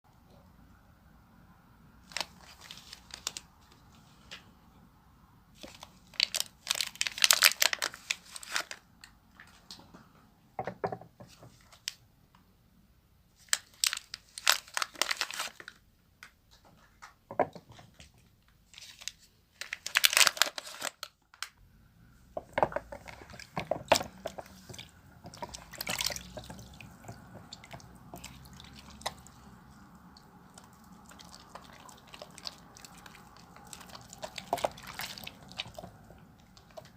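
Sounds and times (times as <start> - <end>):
soap lathering in hands: 24.5 - 36.8.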